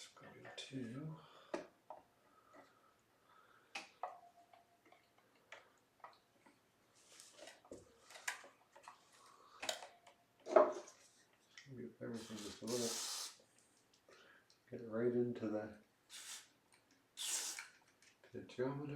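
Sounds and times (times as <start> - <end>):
faint clicks and taps: 3.7 - 6.6
short hissy bursts: 12.1 - 13.5, 16.1 - 16.6, 17.2 - 17.8.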